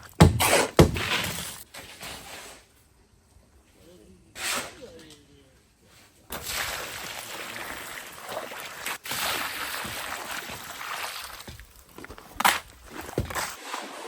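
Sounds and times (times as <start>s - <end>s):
hose water rushing onto concrete: 6.3s - 14.0s.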